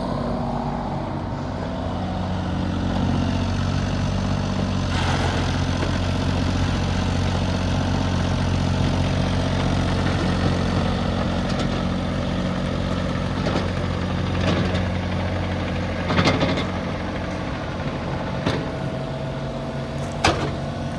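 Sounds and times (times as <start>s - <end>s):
diesel engine idling: 0.0s - 20.9s
metal clanks: 19.9s - 20.9s.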